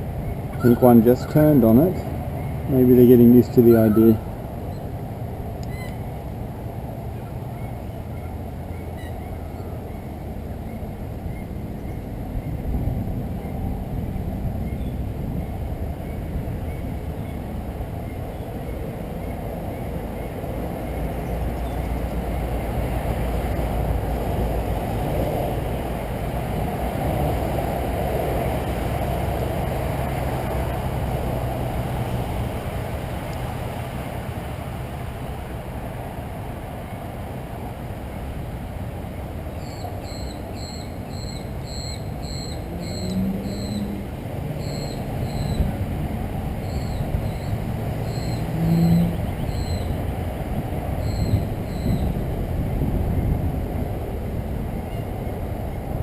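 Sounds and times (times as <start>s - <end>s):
low outdoor rumble: 0.0s - 56.0s
bird chirping: 39.6s - 43.9s, 44.6s - 45.7s, 46.6s - 50.0s, 51.0s - 52.1s.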